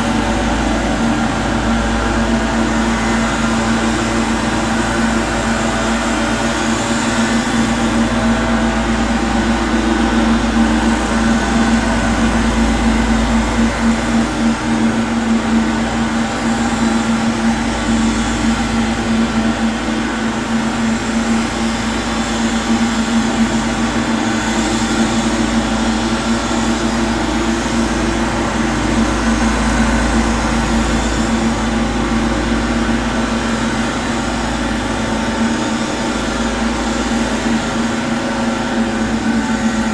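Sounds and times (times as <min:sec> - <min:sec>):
muffled garden machinery drone: 0:00.0 - 0:39.9.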